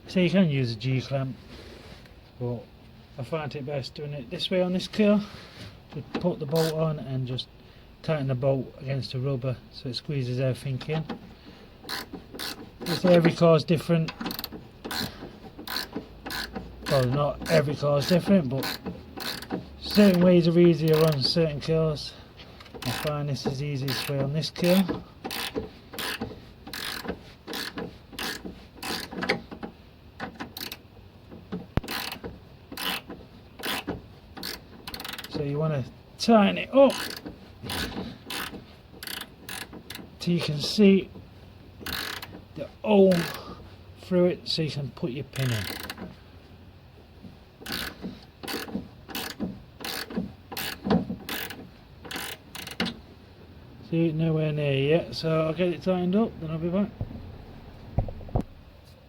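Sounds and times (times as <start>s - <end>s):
ratchet wrench clicking: 6.6s - 6.8s, 11.8s - 13.3s, 14.0s - 21.4s, 22.6s - 30.9s, 31.8s - 35.4s, 36.9s - 40.1s, 41.8s - 42.4s, 43.1s - 43.5s, 45.3s - 46.2s, 47.6s - 53.0s.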